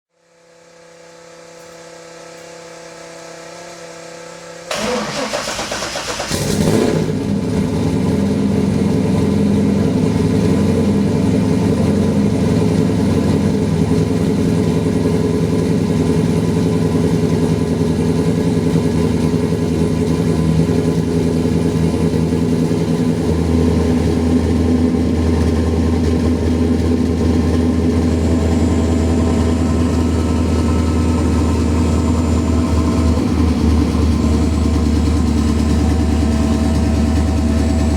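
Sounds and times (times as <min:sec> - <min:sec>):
car engine starter cranking: 0:04.7 - 0:07.1
car engine idling: 0:04.7 - 0:37.9
steady hum: 0:17.4 - 0:37.9.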